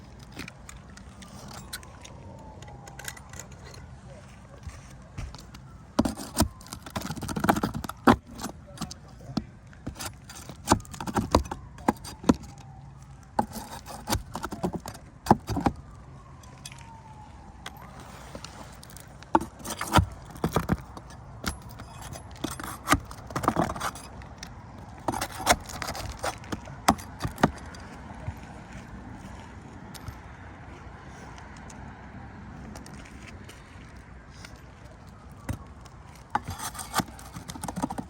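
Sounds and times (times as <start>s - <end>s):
tools prying and scraping shingles: 0.0s - 3.9s, 4.6s - 17.0s, 18.4s - 28.2s, 35.4s - 38.0s.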